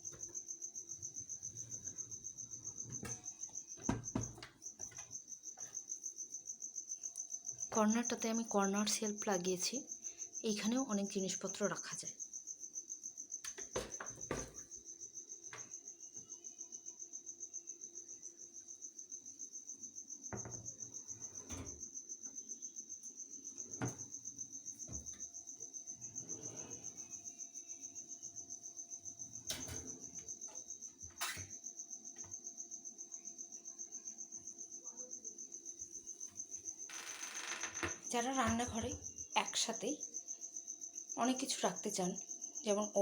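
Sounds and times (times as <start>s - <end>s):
cricket chirping: 0.0s - 43.0s.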